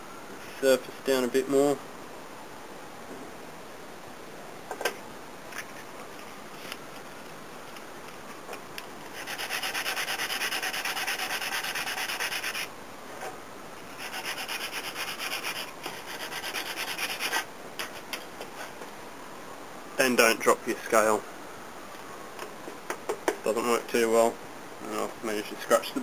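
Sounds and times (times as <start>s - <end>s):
sandpaper sanding wood: 9.2s - 12.7s, 14.0s - 18.1s.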